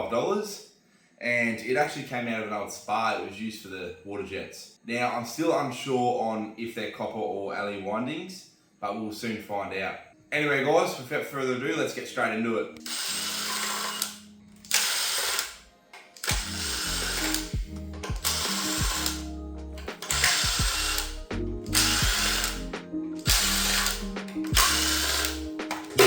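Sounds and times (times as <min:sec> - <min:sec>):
background music: 0:09.5 - 0:26.0
ratcheting tool clicking: 0:12.8 - 0:26.0.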